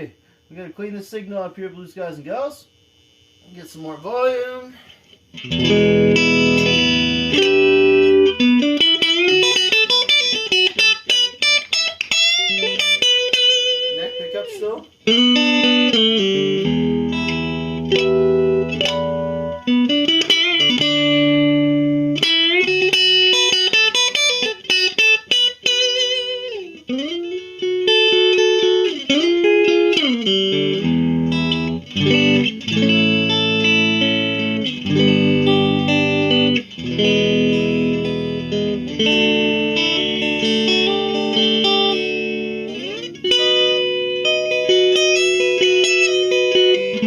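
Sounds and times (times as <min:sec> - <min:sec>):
electric guitar playing blues licks: 0:05.2 - 0:47.0.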